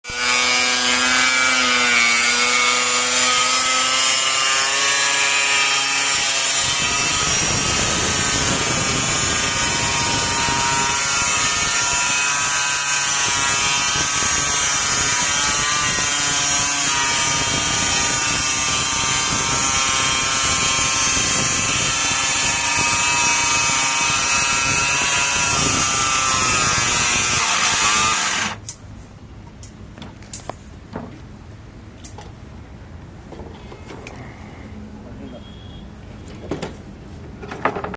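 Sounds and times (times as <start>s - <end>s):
power tool whining: 0.1s - 28.6s.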